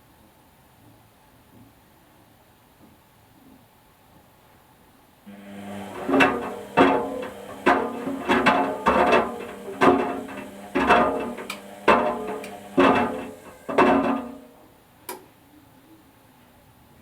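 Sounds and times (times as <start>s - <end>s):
plucked string notes: 5.3s - 14.6s.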